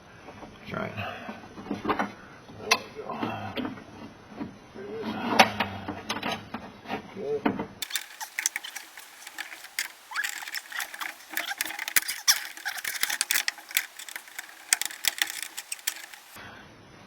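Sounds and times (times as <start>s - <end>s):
small parts clicking and scraping: 7.8s - 16.4s.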